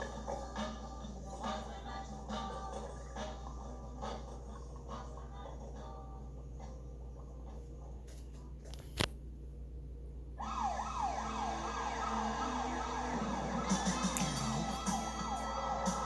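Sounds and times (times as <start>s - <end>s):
low steady hum: 0.0s - 16.0s
siren-like electronic wail: 10.4s - 16.0s.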